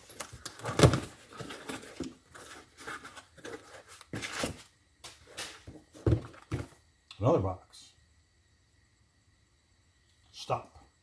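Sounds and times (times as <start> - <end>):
cardboard and packing crinkling: 0.0 - 4.7.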